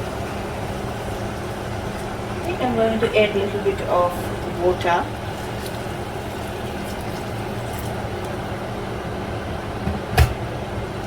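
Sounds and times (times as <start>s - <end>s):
low hum and hiss: 0.0s - 11.0s.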